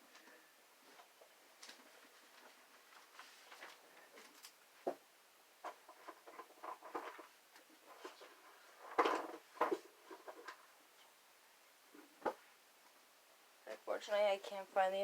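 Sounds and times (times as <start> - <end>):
rummaging rustling: 0.8 - 4.5
objects scraping: 5.6 - 10.7.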